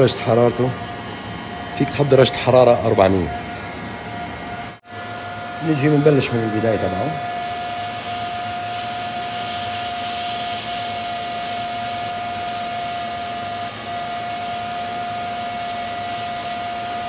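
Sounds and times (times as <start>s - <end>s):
hot air gun whine: 0.0s - 17.0s.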